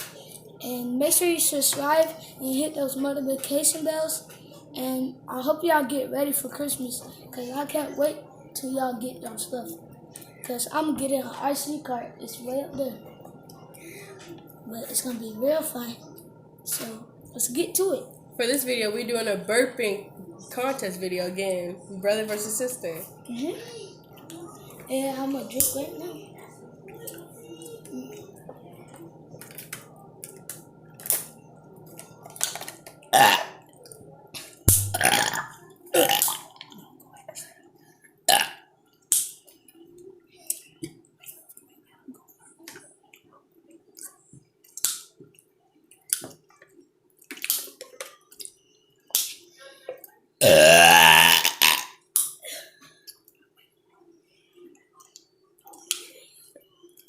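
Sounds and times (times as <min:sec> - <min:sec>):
child burping: 0:33.1 - 0:33.6, 0:34.7 - 0:36.6, 0:38.3 - 0:38.6, 0:50.4 - 0:52.6.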